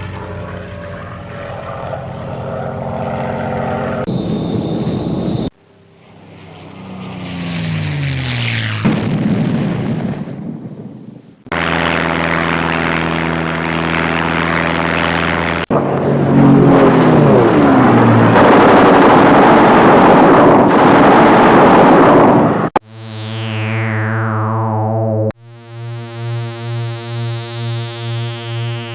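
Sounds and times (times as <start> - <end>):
aeroplane flyby: 0.0 - 22.7
propeller engine drone: 0.0 - 28.9
synthesized falling whistle: 4.1 - 5.6, 22.8 - 26.8
pulsing synthesized tone: 4.1 - 6.2, 22.8 - 28.9.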